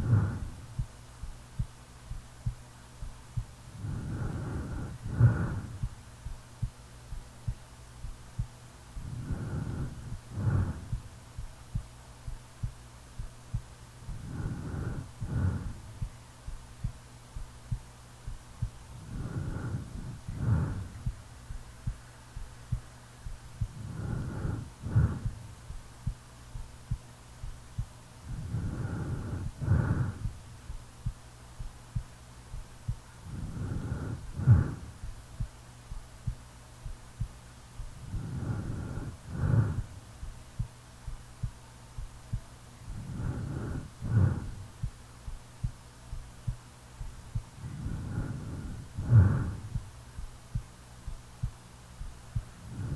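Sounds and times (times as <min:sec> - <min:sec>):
snoring breaths with snort: 0:00.0 - 0:00.6, 0:03.7 - 0:05.8, 0:09.0 - 0:11.1, 0:14.1 - 0:16.0, 0:18.9 - 0:21.1, 0:23.6 - 0:25.5, 0:28.2 - 0:30.4, 0:33.2 - 0:35.1, 0:37.9 - 0:40.0, 0:42.8 - 0:44.7, 0:47.5 - 0:49.9, 0:52.4 - 0:52.9
faint low hum: 0:00.0 - 0:52.9
heartbeat thumping: 0:00.0 - 0:52.9.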